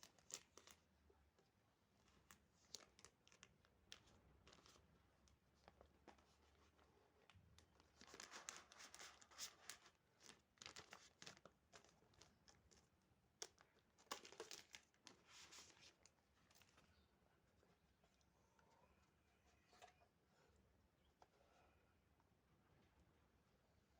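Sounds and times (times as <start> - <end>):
packaging crinkling and tearing: 0.0 - 0.8, 2.1 - 4.8, 7.2 - 16.9.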